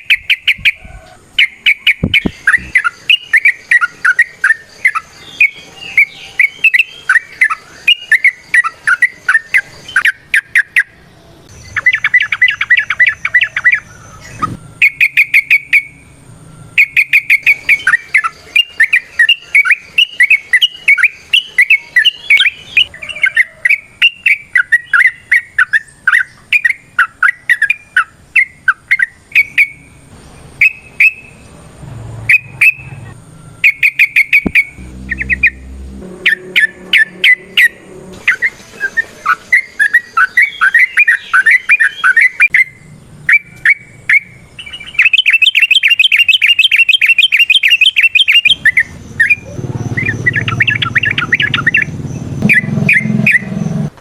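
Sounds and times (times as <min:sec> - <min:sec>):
bird singing varied chirps: 0:00.0 - 0:31.6, 0:32.2 - 0:53.9
faint high whine: 0:00.8 - 0:23.0, 0:28.2 - 0:46.2.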